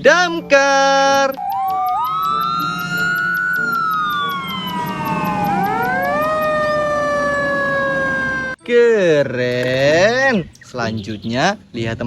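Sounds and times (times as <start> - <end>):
fire engine siren wailing: 1.3 - 8.6.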